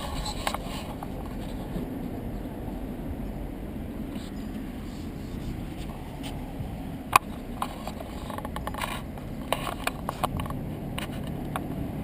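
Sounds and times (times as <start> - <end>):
engine idling with low rumble: 0.0 - 12.0
sharp clicks and knocks: 7.1 - 11.8.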